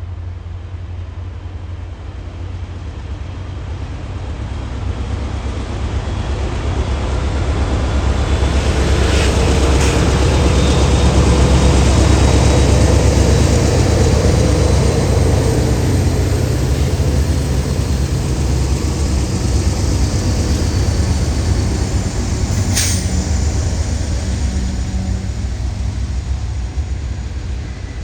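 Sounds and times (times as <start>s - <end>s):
diesel locomotives rumbling: 0.0s - 28.0s
sharp hiss of air: 20.5s - 25.7s.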